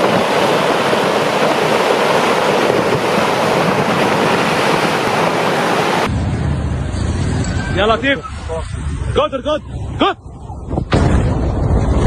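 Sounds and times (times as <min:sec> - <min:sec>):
turbulent water rushing: 0:00.0 - 0:06.1.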